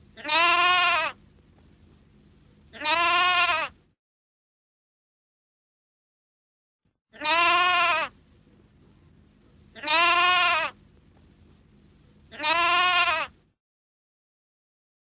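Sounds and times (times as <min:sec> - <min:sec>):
lamb bleating: 0:00.2 - 0:01.2, 0:02.7 - 0:03.8, 0:07.1 - 0:08.1, 0:09.8 - 0:10.8, 0:12.3 - 0:13.4.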